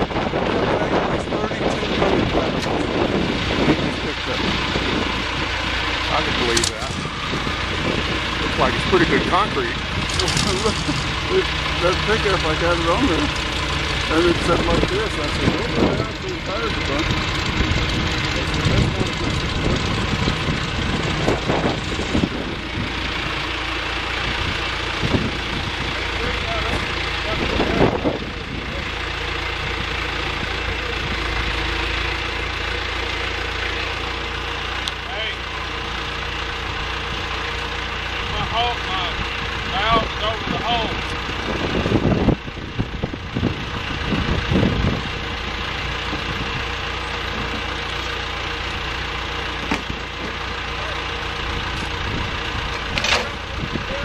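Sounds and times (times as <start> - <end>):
engine idling: 0.0 - 54.0
faint voices: 17.9 - 20.4.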